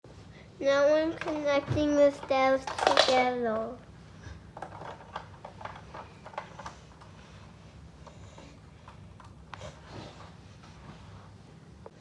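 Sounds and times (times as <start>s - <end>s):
plastic bricks clicking together: 2.6s - 3.3s.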